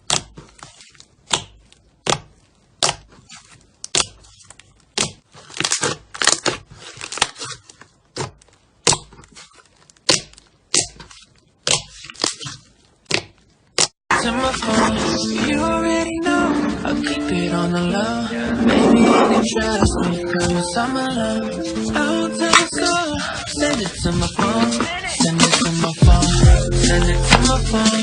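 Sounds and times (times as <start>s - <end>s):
slime crackling and popping: 0.0s - 14.0s.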